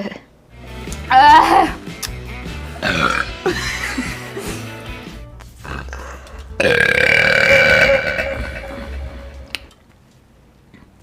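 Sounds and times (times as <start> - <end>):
background music: 0.5 - 9.8
long deep burp: 2.8 - 3.6, 5.6 - 9.0.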